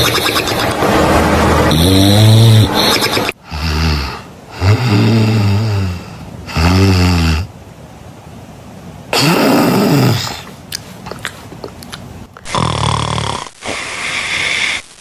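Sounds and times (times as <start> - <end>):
loud snoring: 1.7 - 7.5, 12.5 - 14.8.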